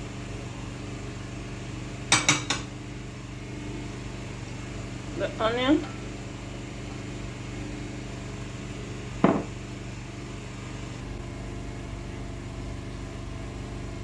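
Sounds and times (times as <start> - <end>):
short sharp knock: 9.2 - 9.5.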